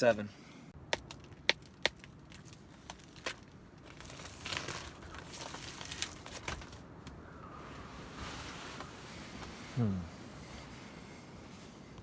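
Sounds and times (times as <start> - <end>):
crinkly rustling of gear: 1.1 - 6.8.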